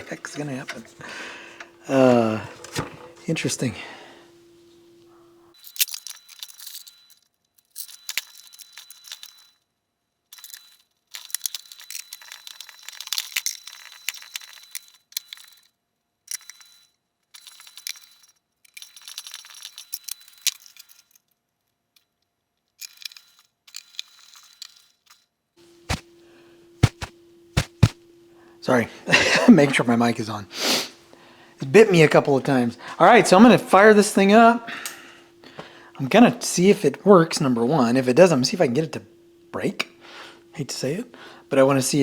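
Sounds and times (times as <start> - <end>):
metallic clatter of small parts: 5.5 - 26.0.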